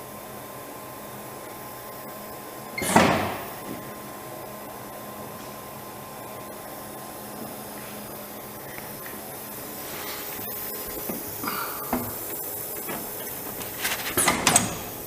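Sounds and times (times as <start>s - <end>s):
machine humming: 1.2s - 15.0s
loud clunk of cover shutting: 2.8s - 3.5s.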